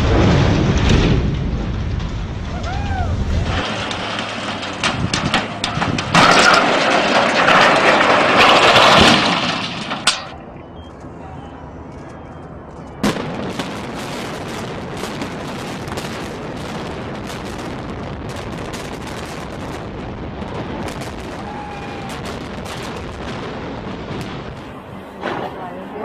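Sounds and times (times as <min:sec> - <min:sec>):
debris cracking and popping: 0:00.0 - 0:10.4
demolition rumble: 0:00.0 - 0:26.0.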